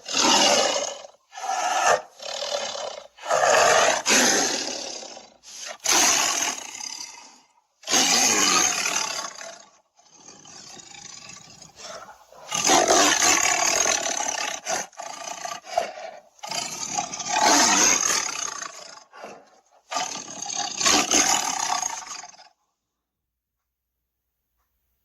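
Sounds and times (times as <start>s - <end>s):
big cat growling: 0.0s - 22.6s
big cat roaring: 0.0s - 22.6s.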